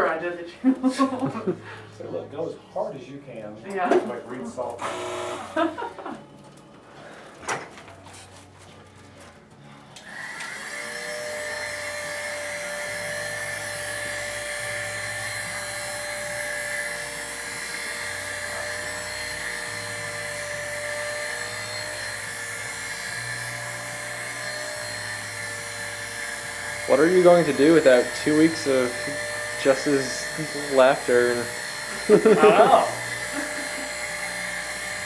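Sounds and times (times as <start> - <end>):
small electric motor whining: 4.8 - 5.9, 10.0 - 35.0.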